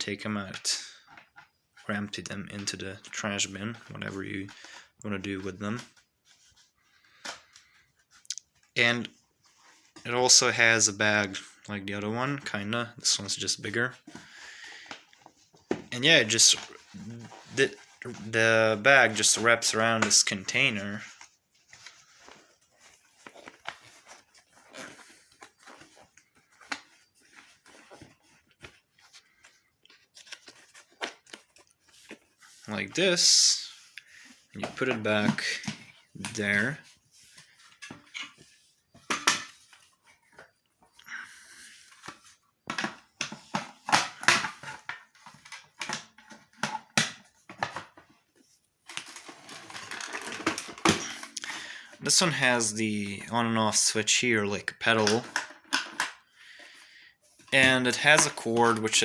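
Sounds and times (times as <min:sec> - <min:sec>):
rustling: 0:13.7 - 0:42.5
plastic rustling and clicking: 0:14.1 - 0:32.7, 0:41.6 - 0:51.6, 0:54.8 - 0:56.7, 0:57.3 - 0:59.0.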